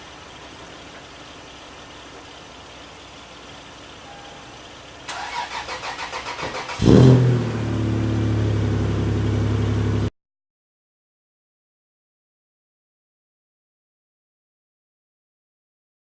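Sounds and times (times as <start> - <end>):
car engine idling: 0.0 - 10.1
car engine starter cranking: 4.4 - 7.9.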